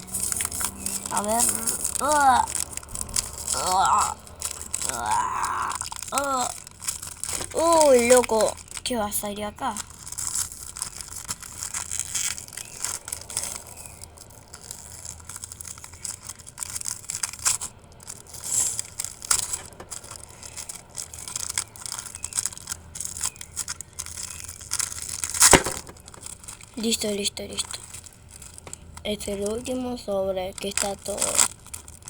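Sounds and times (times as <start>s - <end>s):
foil wrapper crinkling and tearing: 0.0s - 32.0s.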